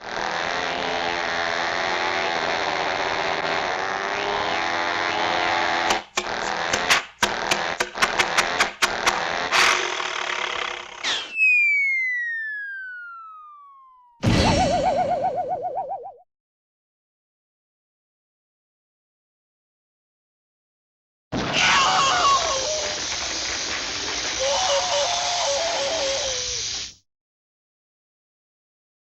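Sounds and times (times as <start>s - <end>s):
sharp cartoon whacks: 5.8s - 10.2s, 10.8s - 11.4s
jumble of cartoon noise: 5.9s - 11.3s, 21.4s - 26.9s
long falling whistle: 11.1s - 15.9s
crash with wobbling tone: 14.2s - 15.4s.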